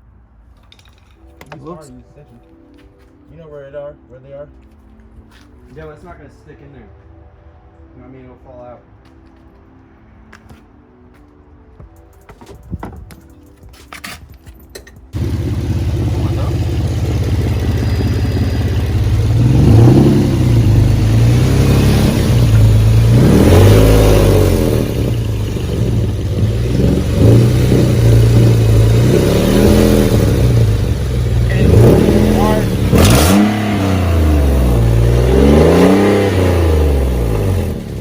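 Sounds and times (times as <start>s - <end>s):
car engine starting and revving: 15.1s - 38.0s.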